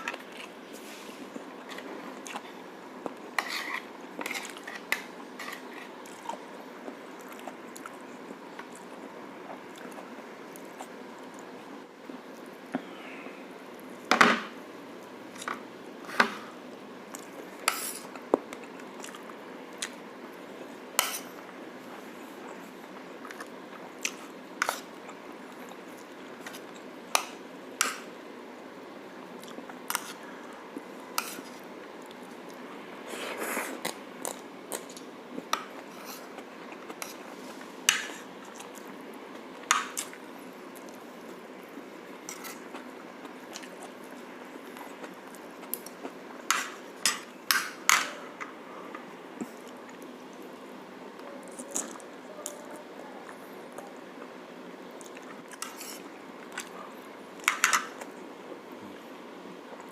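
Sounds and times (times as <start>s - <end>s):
chewing: 55.0s - 58.1s.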